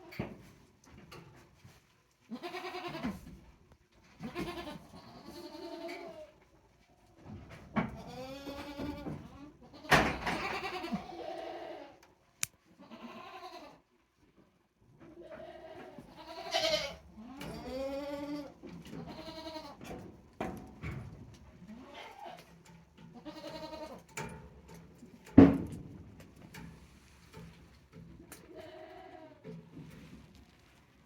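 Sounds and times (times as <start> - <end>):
goats bleating: 2.3 - 3.2, 4.2 - 6.3, 8.0 - 12.0, 12.8 - 13.8, 15.2 - 19.8, 21.7 - 24.1, 28.5 - 29.4.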